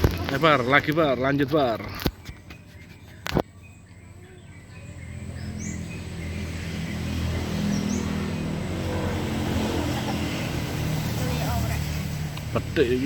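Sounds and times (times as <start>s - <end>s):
bird chirping: 0.2s - 13.0s
vehicle engine approaching: 3.7s - 13.0s.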